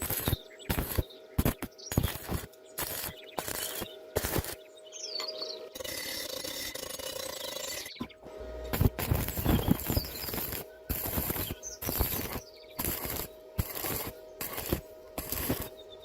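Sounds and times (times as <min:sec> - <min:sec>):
steady hiss: 0:00.0 - 0:04.6, 0:08.4 - 0:15.8.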